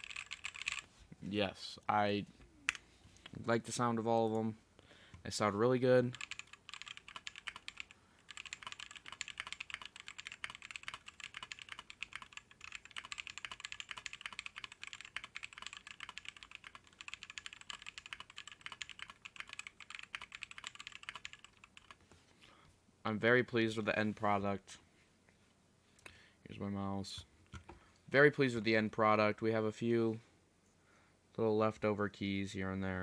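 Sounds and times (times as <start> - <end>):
mechanical keyboard typing: 0.0 - 0.8, 6.0 - 22.0.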